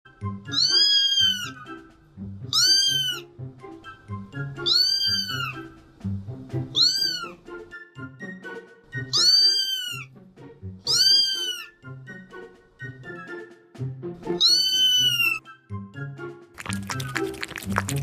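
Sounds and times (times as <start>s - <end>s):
background music: 0.1s - 18.0s
cat meowing: 0.5s - 1.7s, 2.5s - 3.3s, 4.6s - 5.7s, 6.7s - 7.4s, 9.0s - 10.1s, 10.8s - 11.8s, 14.4s - 15.4s.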